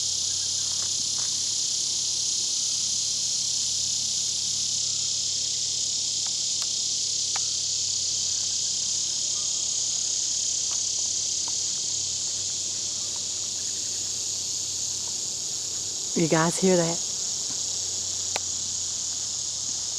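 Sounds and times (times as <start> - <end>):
insects droning: 0.0 - 19.9
faint ticks: 6.2 - 7.6, 10.6 - 11.7, 18.2 - 18.6.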